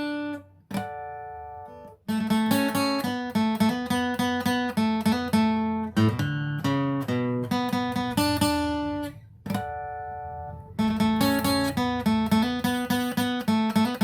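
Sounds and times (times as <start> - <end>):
acoustic guitar picking: 0.0 - 14.0.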